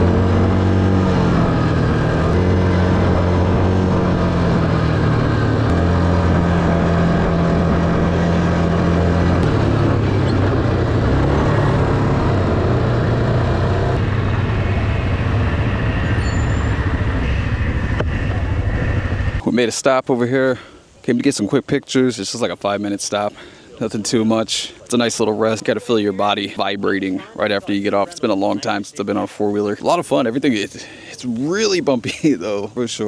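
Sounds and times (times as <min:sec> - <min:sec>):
atv engine running: 0:00.0 - 0:19.4.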